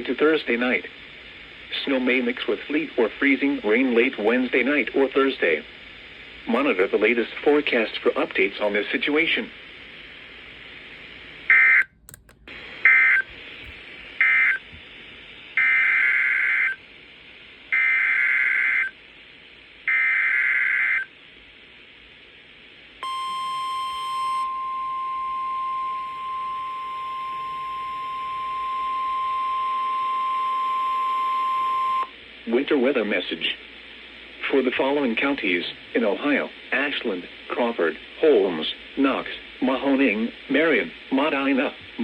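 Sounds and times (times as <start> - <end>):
faint radio hiss: 0.0 - 23.0, 32.1 - 42.0
steady warning alarm tone: 23.0 - 32.1.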